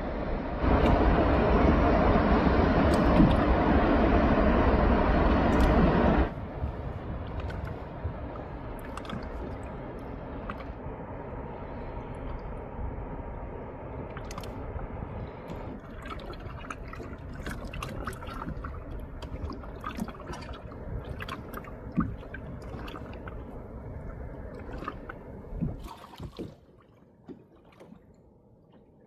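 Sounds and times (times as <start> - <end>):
low rumble: 0.0 - 26.0
water splashing and dripping: 2.8 - 3.6, 5.5 - 5.9, 6.8 - 10.8, 14.1 - 28.8.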